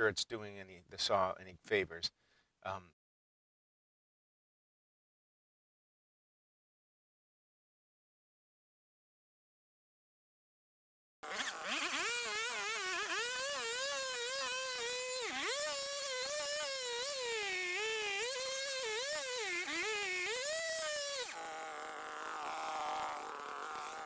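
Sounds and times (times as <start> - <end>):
chainsaw cutting through log: 11.2 - 24.0.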